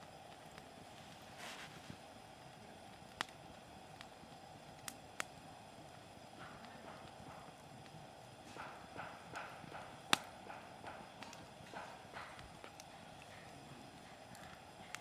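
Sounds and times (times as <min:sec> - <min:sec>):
campfire crackling: 0:00.0 - 0:15.0.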